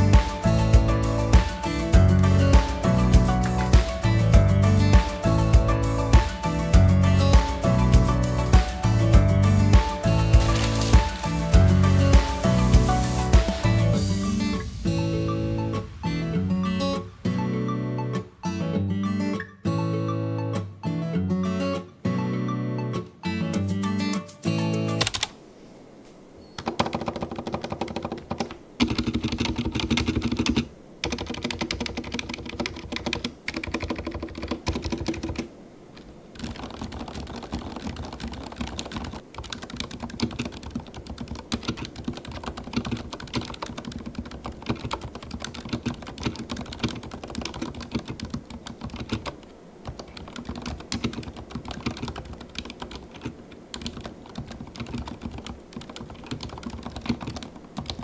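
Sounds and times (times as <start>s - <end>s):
muted mechanical keyboard typing: 0.0s - 4.2s, 10.4s - 13.6s, 25.0s - 25.3s, 26.6s - 35.5s, 36.3s - 58.0s.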